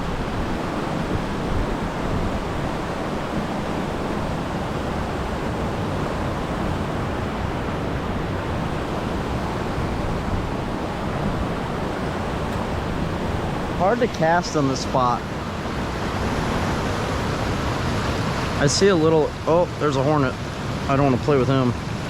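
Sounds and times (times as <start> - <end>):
river water rushing through spillway: 0.0 - 22.0.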